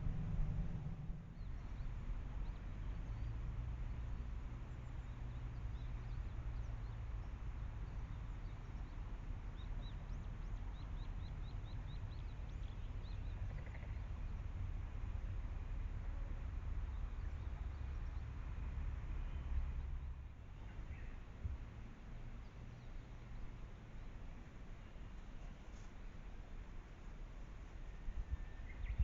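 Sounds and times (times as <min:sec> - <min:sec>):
low rumble: 0:00.0 - 0:04.2.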